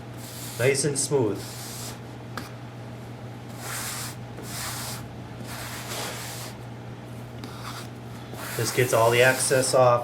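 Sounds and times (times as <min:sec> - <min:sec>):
steady low hum: 0:00.0 - 0:10.0
grout float swishing across tile: 0:03.6 - 0:06.6.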